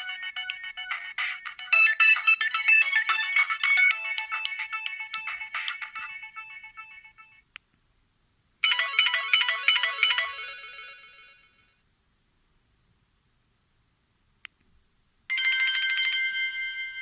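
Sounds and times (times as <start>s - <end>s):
phone melodic tone: 0.0s - 7.4s, 8.6s - 11.3s.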